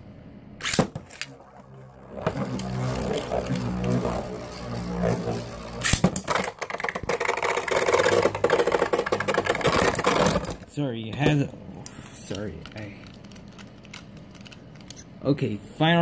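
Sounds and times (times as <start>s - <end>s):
spinning tops rattling and clashing: 0.6s - 10.6s
spinning tops droning: 0.6s - 10.7s.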